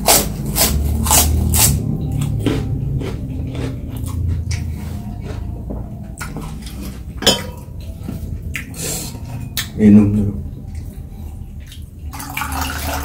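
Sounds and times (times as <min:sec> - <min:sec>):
chewing: 0:00.6 - 0:07.1
utensils clinking on plate: 0:06.6 - 0:07.8.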